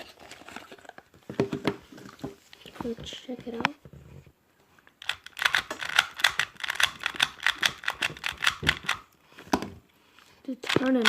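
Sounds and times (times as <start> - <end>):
plastic cube clicking: 5.0 - 9.1, 10.6 - 11.0.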